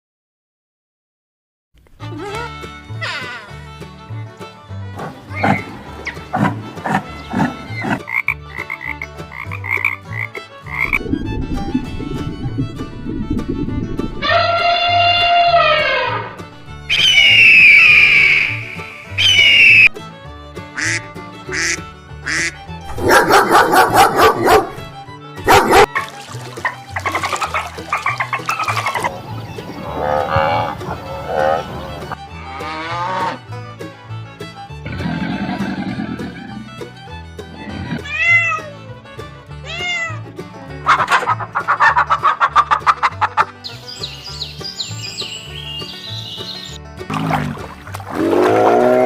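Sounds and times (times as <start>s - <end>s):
background music with bass line: 1.8s - 49.0s
farm animal calls: 5.1s - 8.9s, 27.0s - 33.2s
cat meowing: 38.0s - 38.8s, 39.6s - 40.3s.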